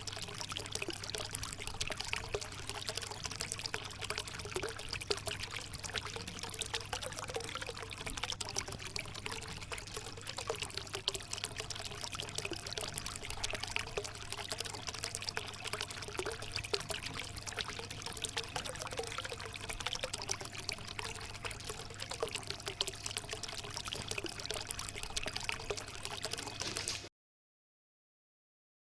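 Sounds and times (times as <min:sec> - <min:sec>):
fountain water pouring into basin: 0:00.0 - 0:27.1.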